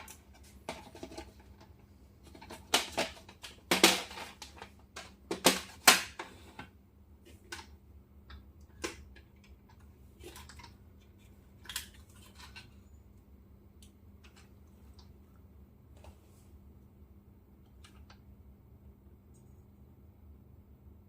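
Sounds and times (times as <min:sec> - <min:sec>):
light rustling of packaging: 0:08.7 - 0:13.2.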